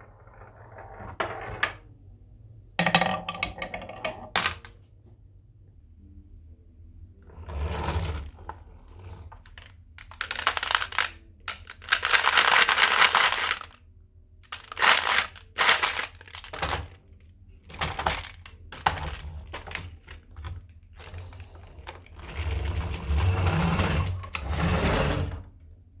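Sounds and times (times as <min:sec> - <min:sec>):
marbles rolling down a marble run: 0:02.8 - 0:04.7, 0:09.4 - 0:13.7, 0:21.0 - 0:25.4.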